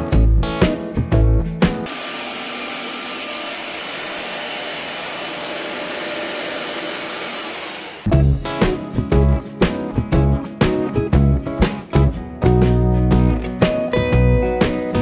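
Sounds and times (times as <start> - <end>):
vacuum cleaner running: 1.9 - 8.1.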